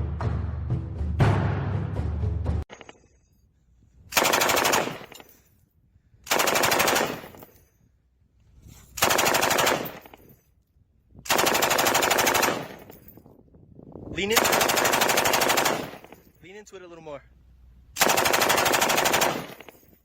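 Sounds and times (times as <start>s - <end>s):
machine gun automatic fire: 4.2s - 5.3s, 6.3s - 7.4s, 9.0s - 10.2s, 11.3s - 12.9s, 14.2s - 16.2s, 18.0s - 19.8s.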